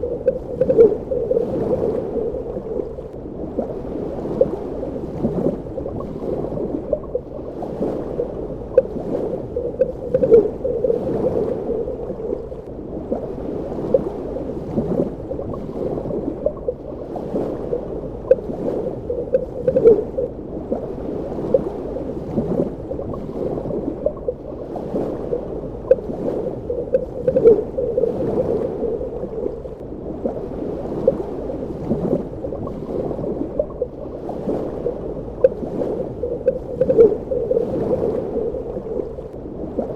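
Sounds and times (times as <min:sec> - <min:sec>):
bubbling pops and gurgles: 0:00.0 - 0:02.9, 0:08.2 - 0:12.6, 0:19.1 - 0:20.3, 0:26.7 - 0:29.7, 0:35.3 - 0:38.8
muffled underwater wash: 0:00.0 - 0:39.9.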